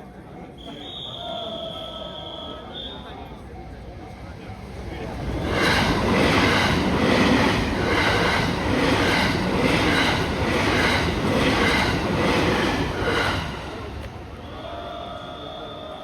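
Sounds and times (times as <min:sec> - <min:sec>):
train wheels clacking over rail joints: 0:05.4 - 0:14.2.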